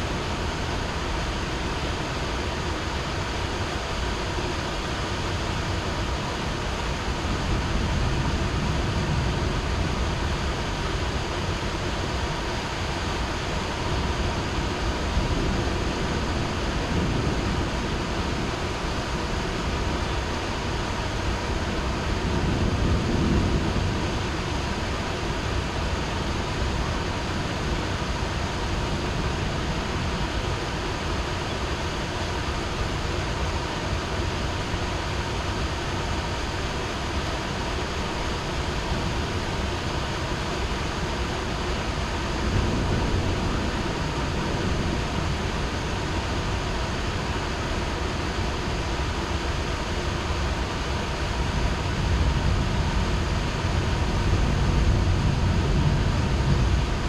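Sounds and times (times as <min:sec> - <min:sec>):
heavy rain pouring: 0:00.0 - 0:57.0
distant thunder rumble: 0:41.9 - 0:47.7.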